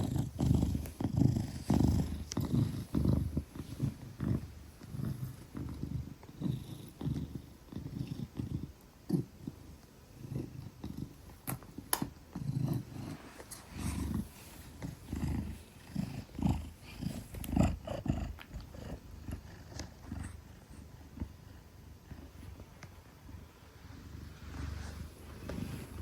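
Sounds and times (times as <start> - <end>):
cat purring: 0.0 - 26.0.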